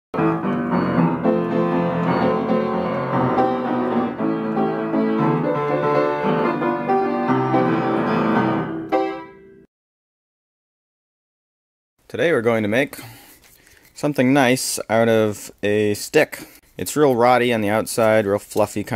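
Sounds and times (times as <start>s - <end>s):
piano music: 0.2s - 9.7s.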